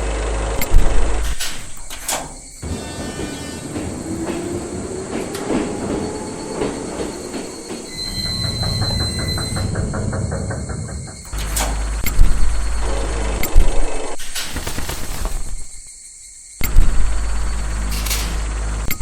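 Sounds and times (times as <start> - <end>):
train wheels clacking on rails: 0.9 - 13.9.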